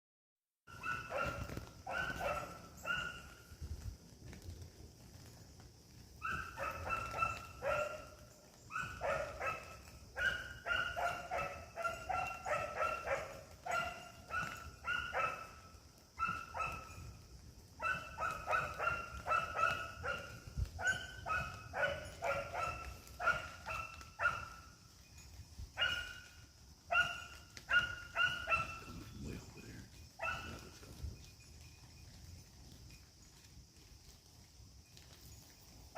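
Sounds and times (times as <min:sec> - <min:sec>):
puppy yapping: 0:00.7 - 0:03.2, 0:06.3 - 0:08.2.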